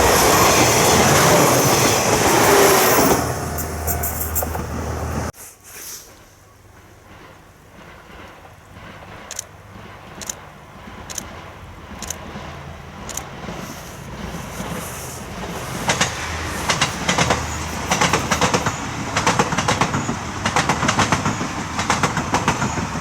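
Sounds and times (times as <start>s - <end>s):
low train rumble: 0.0s - 5.4s, 6.0s - 23.0s
train wheels clicking over rail joints: 6.0s - 23.0s.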